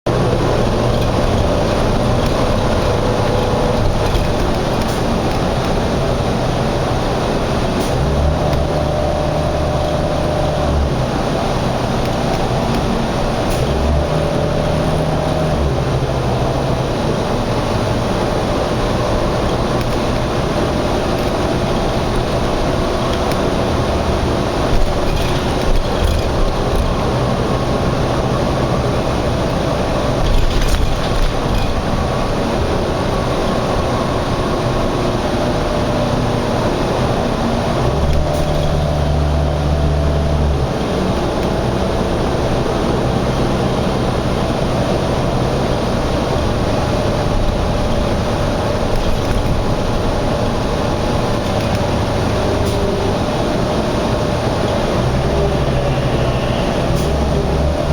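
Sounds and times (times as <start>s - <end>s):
highway traffic noise: 0.0s - 57.9s
heavy engine low hum: 0.1s - 57.9s.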